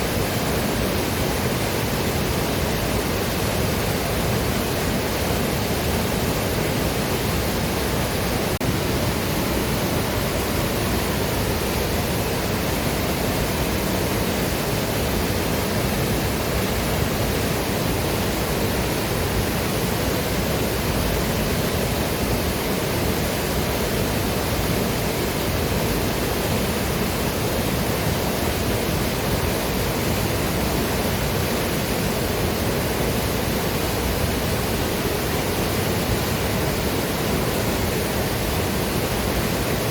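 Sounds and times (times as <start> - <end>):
waterfall and river rushing: 0.0 - 39.9.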